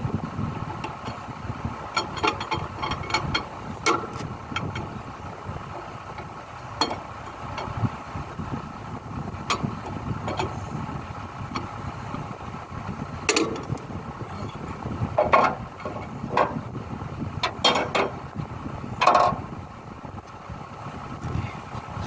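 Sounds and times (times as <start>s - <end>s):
low engine rumble: 0.0s - 22.0s
spanner clinking on metal: 1.9s - 4.9s, 17.4s - 18.2s.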